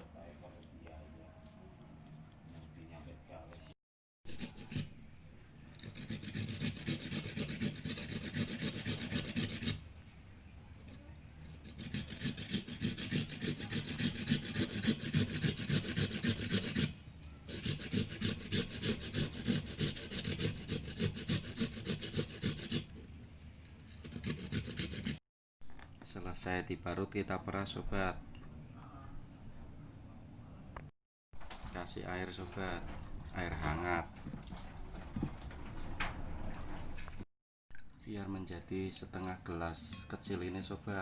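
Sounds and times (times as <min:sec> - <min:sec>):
root grated on hand grater: 0:04.3 - 0:05.0, 0:05.7 - 0:09.8, 0:11.5 - 0:23.0, 0:23.9 - 0:25.2.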